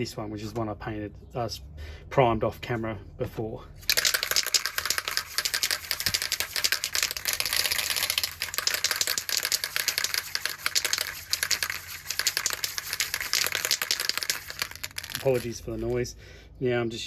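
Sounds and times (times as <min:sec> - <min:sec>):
spray can ball rattling: 0:03.9 - 0:16.0.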